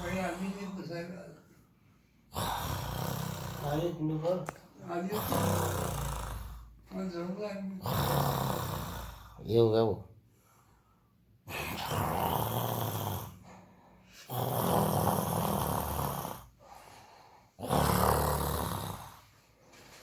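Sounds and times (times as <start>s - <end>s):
person snoring: 2.3s - 4.4s, 5.0s - 6.8s, 7.8s - 9.4s, 11.4s - 16.8s, 17.6s - 19.3s
quiet breaths: 10.2s - 11.9s, 12.8s - 20.0s.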